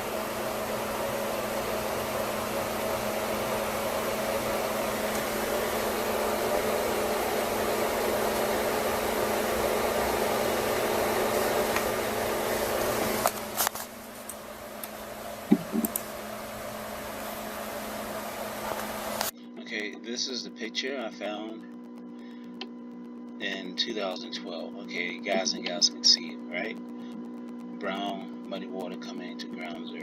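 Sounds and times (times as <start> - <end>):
low hum: 0.0 - 30.0
clicks: 13.2 - 16.1, 21.5 - 23.8
steady hiss: 23.4 - 26.8.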